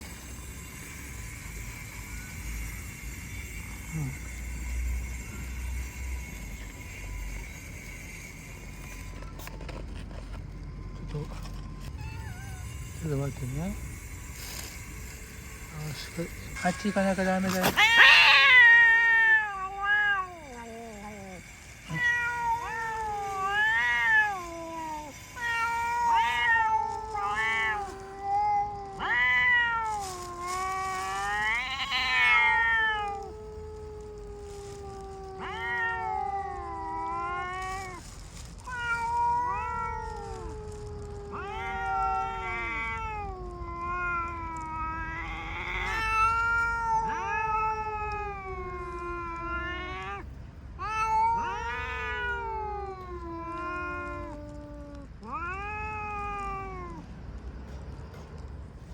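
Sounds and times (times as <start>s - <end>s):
cat wailing: 10.8s - 13.0s, 17.5s - 57.2s
cat yowling: 11.8s - 13.0s, 17.6s - 57.1s.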